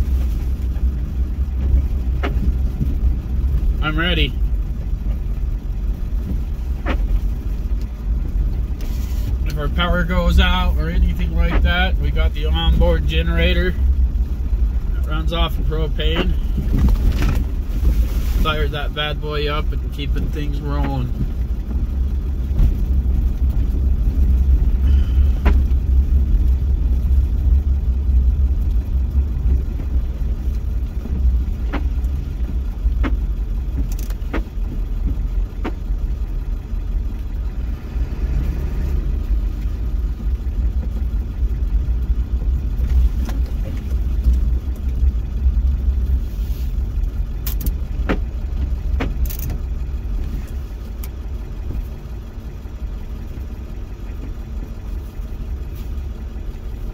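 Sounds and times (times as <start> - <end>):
truck cab road rumble: 0.0 - 56.9.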